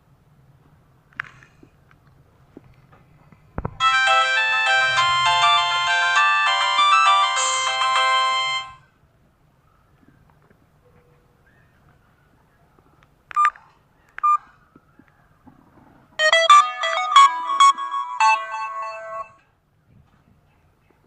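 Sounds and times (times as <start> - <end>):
electronic ringtone melody: 3.8 - 8.8, 16.2 - 19.4
short electronic beeps: 16.2 - 19.4.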